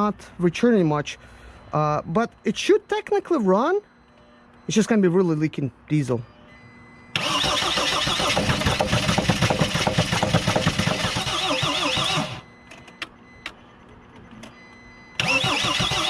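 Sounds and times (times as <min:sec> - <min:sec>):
diesel engine cranking: 0:07.1 - 0:16.0.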